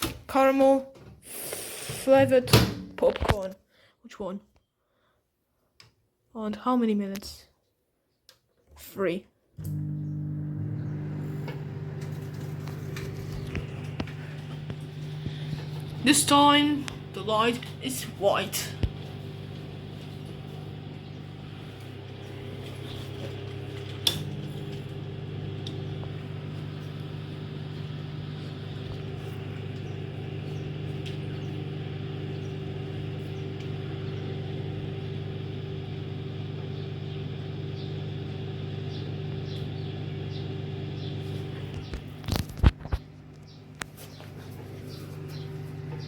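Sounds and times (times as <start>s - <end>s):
microwave oven humming: 9.6s - 46.0s.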